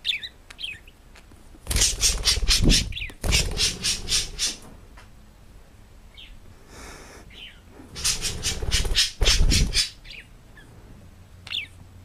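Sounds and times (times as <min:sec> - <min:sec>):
parrot squawking: 0:01.7 - 0:04.6, 0:07.4 - 0:10.3.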